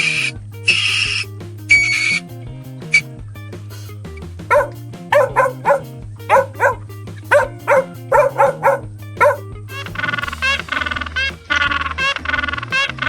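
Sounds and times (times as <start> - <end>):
fast animal calls: 0.0 - 2.2, 4.5 - 13.0
background music: 0.0 - 13.0
dog barking: 4.5 - 9.4.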